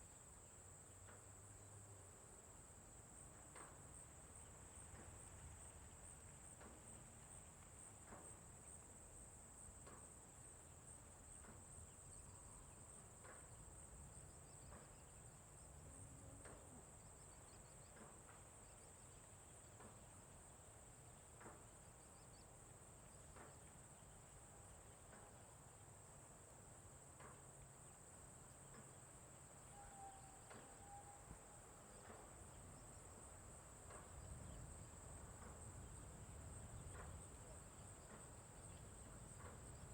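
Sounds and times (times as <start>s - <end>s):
faint ticks: 0.4s - 29.2s, 30.4s - 39.9s
bird call: 29.7s - 31.4s
insects chirring: 29.7s - 39.9s.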